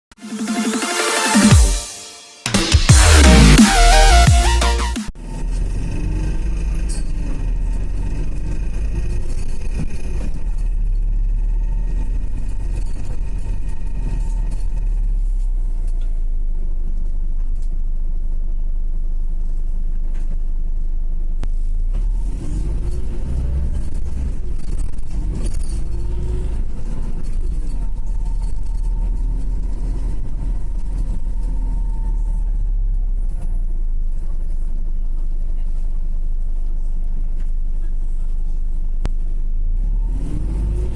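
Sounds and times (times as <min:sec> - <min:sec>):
steady high tone: 0:00.1 - 0:05.1
bus engine rumble: 0:05.2 - 0:40.9.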